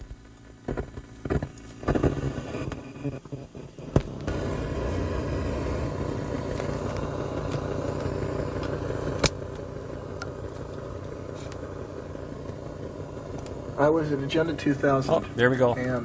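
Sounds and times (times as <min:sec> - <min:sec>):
low rumble inside a car: 0:00.0 - 0:16.0.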